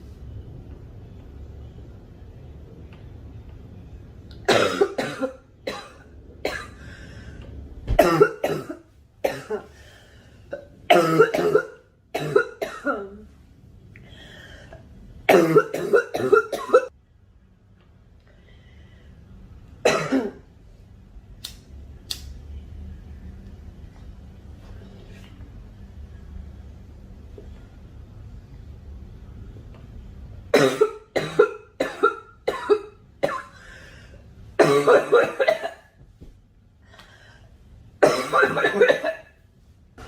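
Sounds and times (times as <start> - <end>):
girl coughing: 4.5 - 6.7, 8.0 - 9.7, 10.9 - 13.2, 15.3 - 16.9, 19.9 - 20.4, 30.6 - 33.6, 34.6 - 35.9, 38.0 - 39.3.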